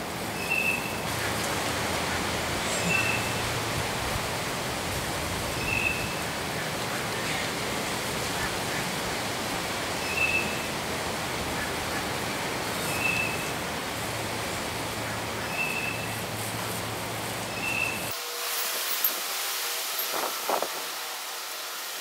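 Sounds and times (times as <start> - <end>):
rushing outdoor background noise: 0.0 - 22.0.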